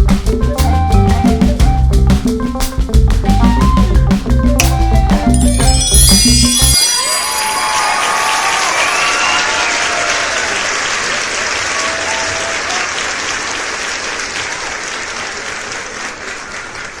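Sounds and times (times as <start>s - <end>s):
crowd applause: 6.8s - 17.0s.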